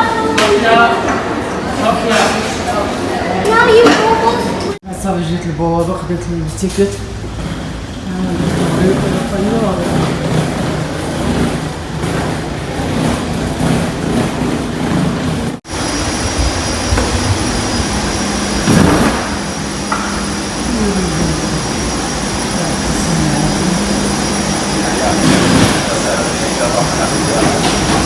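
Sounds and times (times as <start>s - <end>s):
jet cabin rushing noise: 7.0s - 28.0s
high whining tones: 15.7s - 28.0s
faint voices: 20.1s - 28.0s.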